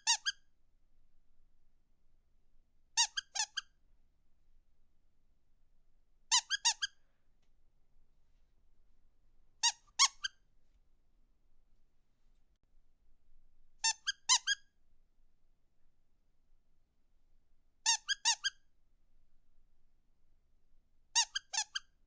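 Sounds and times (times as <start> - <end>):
squeaky rubber dog toy: 0.0 - 0.5, 3.0 - 3.8, 6.3 - 7.0, 9.6 - 10.4, 13.8 - 14.7, 17.8 - 18.6, 21.1 - 22.0.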